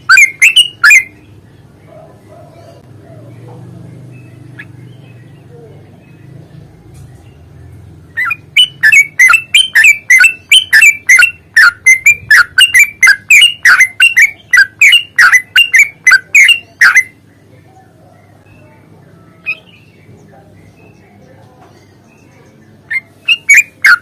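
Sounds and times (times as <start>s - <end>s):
bird chattering sharply: 0.0s - 1.4s, 8.1s - 17.3s, 19.4s - 20.1s, 22.7s - 24.0s.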